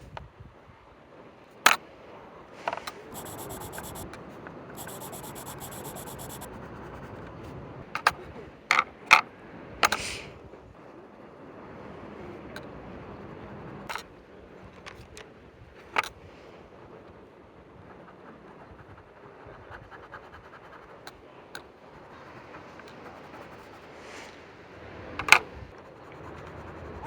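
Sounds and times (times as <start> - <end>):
drawing tool scratching paper: 3.1 - 4.0, 4.8 - 6.5
fast high buzz: 3.1 - 4.1, 4.8 - 6.5.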